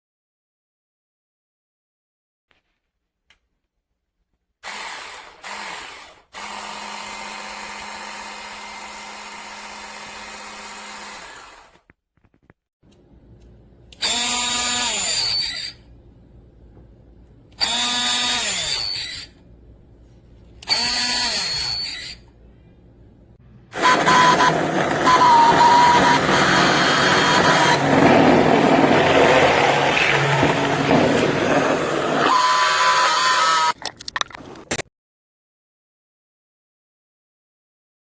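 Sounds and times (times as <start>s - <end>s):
immersion blender motor: 4.6s - 11.9s, 14.0s - 15.8s, 17.6s - 19.4s, 20.6s - 22.2s, 23.7s - 33.8s.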